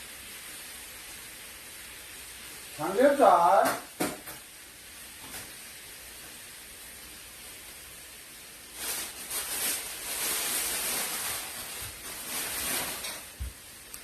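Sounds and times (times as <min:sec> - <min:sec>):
meat sizzling in a pan: 0:00.0 - 0:14.0.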